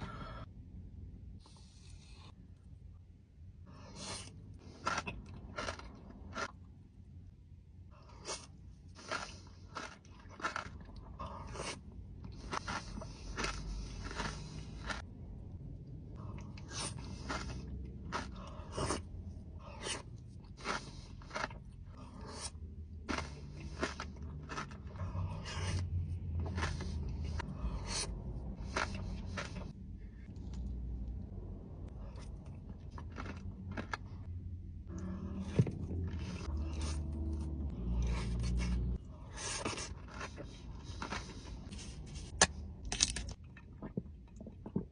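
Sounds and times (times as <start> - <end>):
low hum: 0.0 - 44.9
close-miked crunchy chewing: 4.0 - 6.6, 8.0 - 15.1, 16.2 - 30.8, 31.9 - 42.3.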